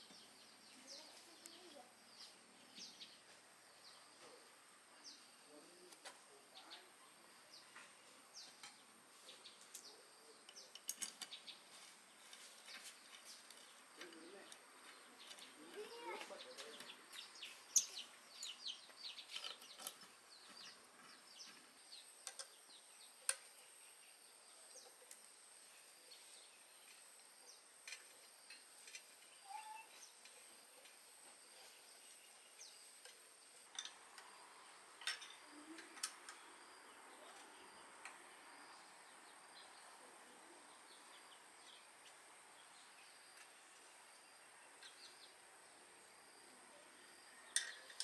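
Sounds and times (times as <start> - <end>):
faint bird chirps: 13.7 - 33.6.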